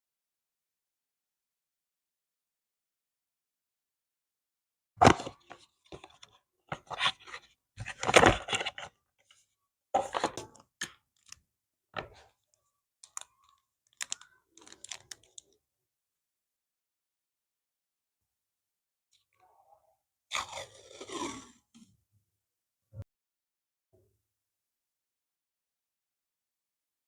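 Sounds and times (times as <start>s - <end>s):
packaging crinkling and tearing: 13.9s - 15.5s.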